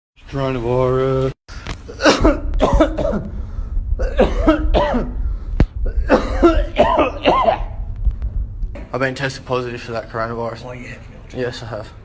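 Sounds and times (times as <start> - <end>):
man coughing: 1.9 - 3.4, 4.0 - 7.8.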